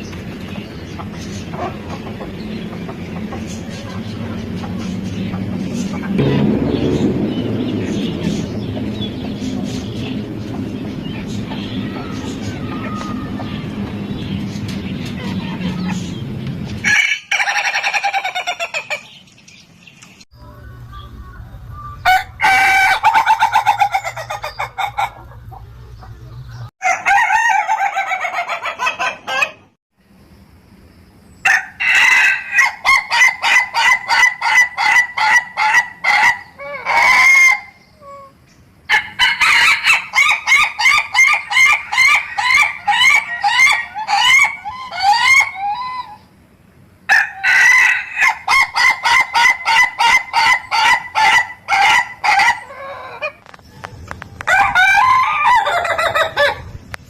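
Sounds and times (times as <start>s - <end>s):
rooster crowing: 22.0s - 25.4s, 26.8s - 29.6s, 31.4s - 37.8s, 38.9s - 46.2s, 47.1s - 56.6s
rooster laughing crow: 26.8s - 29.6s, 31.5s - 38.3s, 38.9s - 46.2s, 47.1s - 53.4s, 54.5s - 56.6s.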